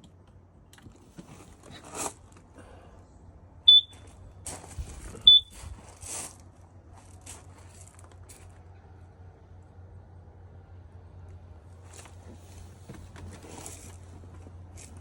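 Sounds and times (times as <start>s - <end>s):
high-pitched detector beeps: 3.7s - 4.1s, 5.3s - 5.6s.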